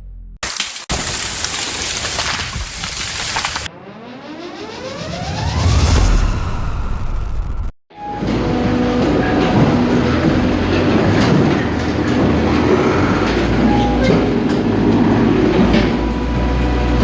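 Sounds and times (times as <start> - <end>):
heavy machinery engine: 8.0 - 17.0
machinery clattering and knocking: 8.2 - 17.0.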